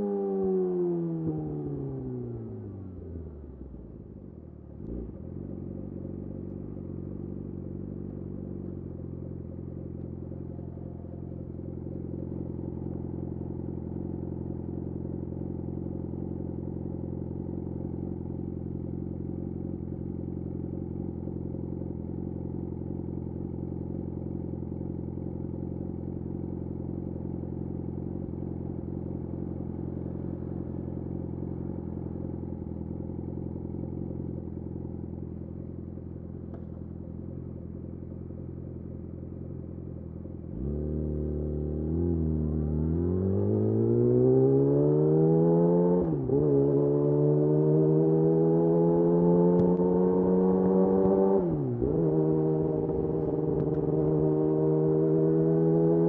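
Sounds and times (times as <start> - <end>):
motorcycle engine idling: 2.4 - 40.6.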